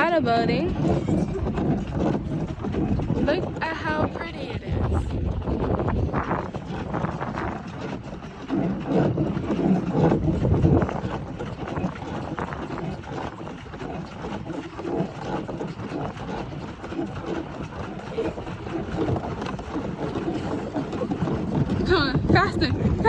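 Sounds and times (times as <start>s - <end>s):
paddle wheel splashing water: 0.0s - 23.0s
wind buffeting microphone: 0.0s - 23.0s.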